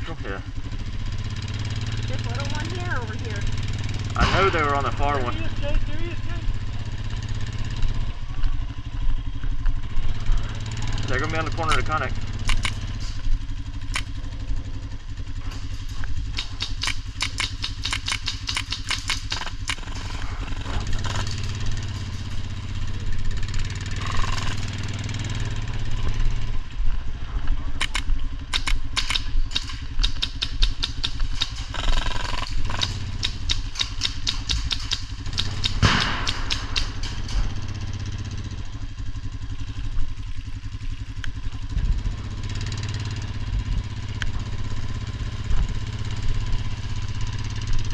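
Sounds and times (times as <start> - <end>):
vehicle engine idling: 0.0 - 47.9
airsoft guns firing: 15.7 - 20.2, 27.8 - 37.7.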